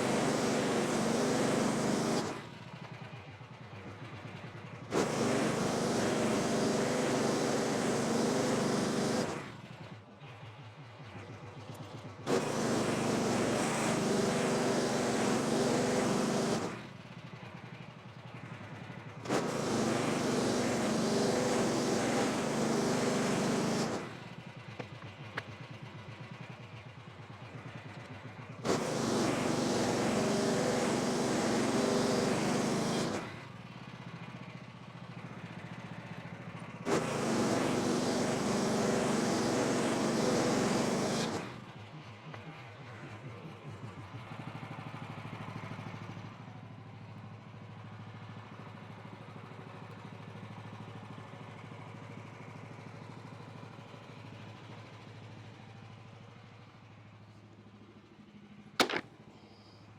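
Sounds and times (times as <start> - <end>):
gas engine bandsaw running: 0.0 - 2.4, 4.9 - 9.4, 12.3 - 16.8, 19.2 - 24.1, 28.6 - 33.3, 36.9 - 41.6, 58.8 - 59.2.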